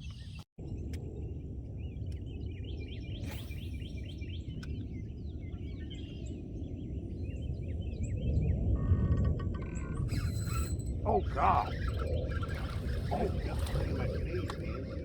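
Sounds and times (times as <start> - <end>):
birds singing: 9.6 - 15.0.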